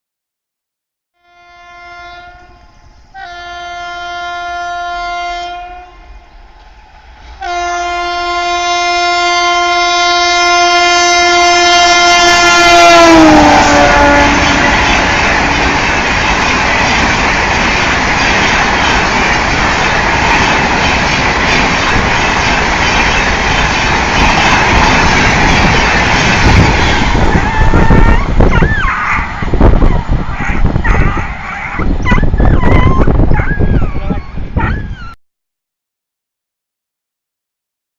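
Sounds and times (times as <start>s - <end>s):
locomotive horn blasts: 1.2s - 6.3s, 7.4s - 15.9s
train coaches rushing and clattering: 11.6s - 35.1s.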